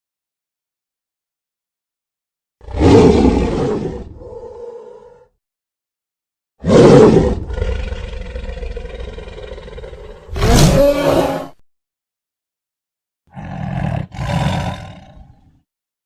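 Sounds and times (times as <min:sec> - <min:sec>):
monster roar: 0:06.6 - 0:11.5, 0:13.3 - 0:15.4
rumbling growl: 0:06.8 - 0:11.4.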